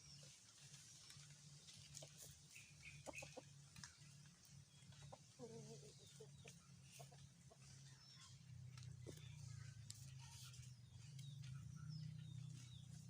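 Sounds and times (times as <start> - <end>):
bird clucking like fowl: 2.0 - 3.6.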